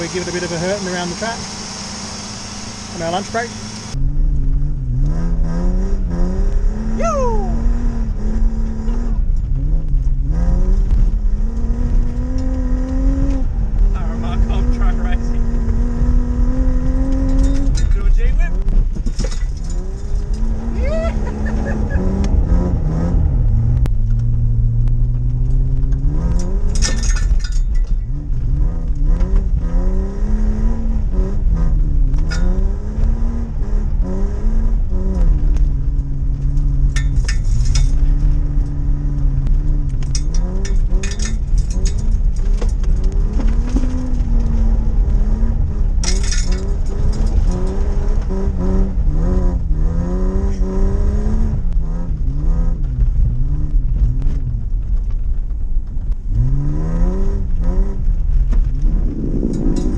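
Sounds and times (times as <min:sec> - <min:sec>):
car engine revving: 0:00.0 - 0:59.9.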